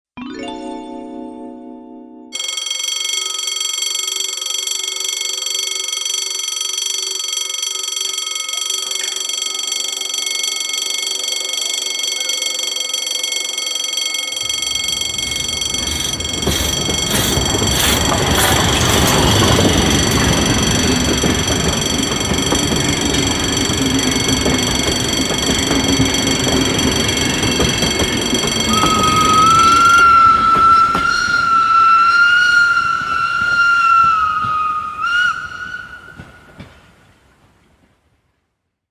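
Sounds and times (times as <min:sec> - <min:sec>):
electric alarm bell ringing: 0:02.4 - 0:36.2
steam locomotive passing: 0:14.4 - 0:38.2
train clattering: 0:14.4 - 0:38.2.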